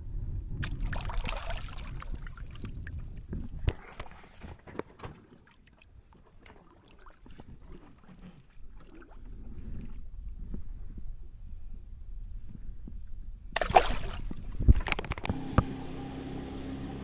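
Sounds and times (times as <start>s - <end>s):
low steady rumble: 9.3s - 17.0s.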